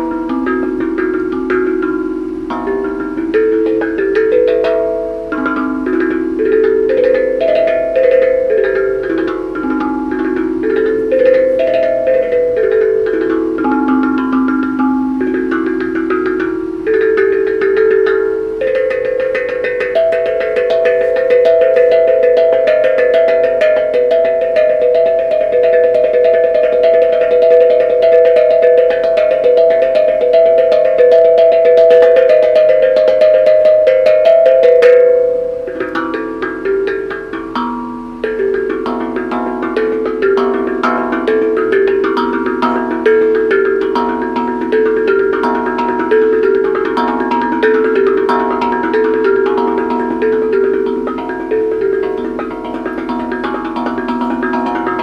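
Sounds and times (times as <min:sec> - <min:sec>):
tuned percussion melody: 0:00.0 - 0:55.0.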